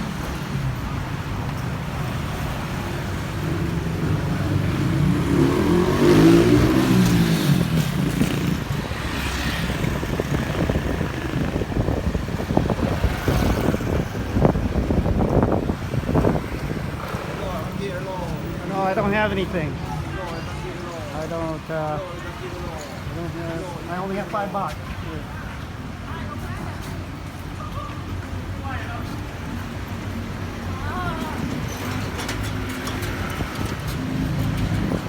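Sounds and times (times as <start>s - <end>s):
street traffic: 0.0s - 35.0s
vehicle passing close by: 2.1s - 19.8s.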